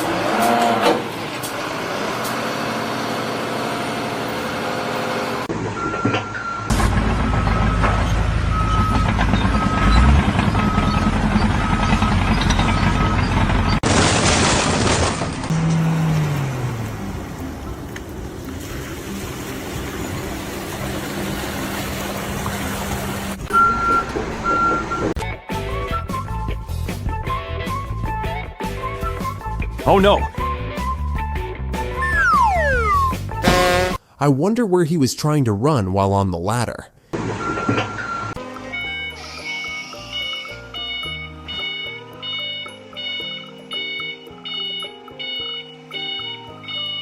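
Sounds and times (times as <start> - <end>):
heavy vehicle engine running: 0.0 - 13.8, 15.4 - 25.2
reversing alarm beeping: 5.7 - 13.8, 23.5 - 25.2, 32.0 - 33.2, 37.4 - 47.0
vehicle engine running: 6.7 - 13.8
steady high tone: 32.0 - 33.2.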